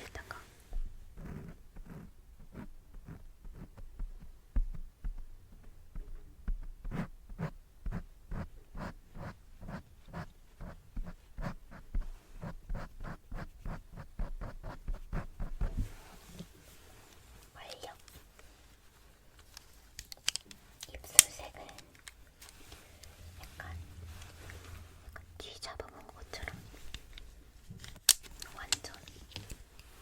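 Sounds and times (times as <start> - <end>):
light scratching strokes: 20.6 - 27.8.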